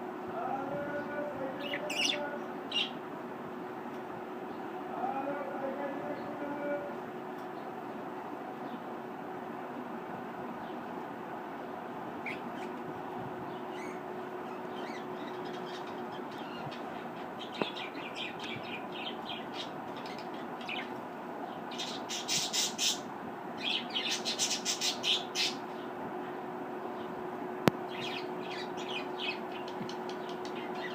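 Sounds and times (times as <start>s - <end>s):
steady background hum: 0.0s - 30.9s
budgerigars chirping and squawking: 1.6s - 3.0s, 12.2s - 12.8s, 13.7s - 20.9s, 21.7s - 25.7s, 27.9s - 30.9s.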